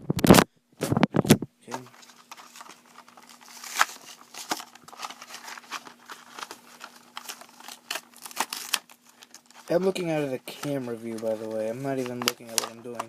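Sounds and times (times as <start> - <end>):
plastic packaging crinkling: 1.7 - 13.0.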